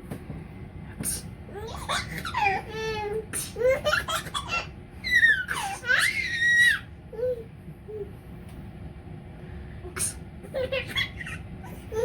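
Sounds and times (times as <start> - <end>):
child laughing and squealing: 3.6 - 6.9.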